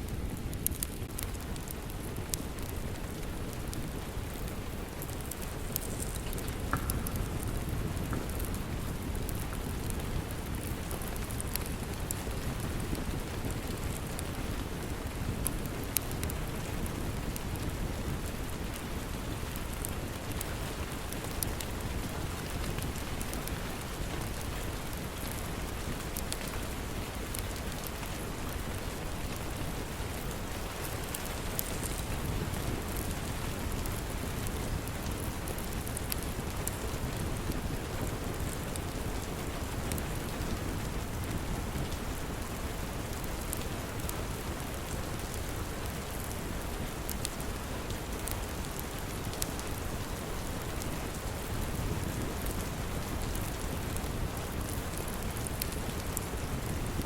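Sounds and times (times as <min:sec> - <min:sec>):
steady rain: 0:00.0 - 0:57.0
wood fire crackling and popping: 0:00.0 - 0:57.0.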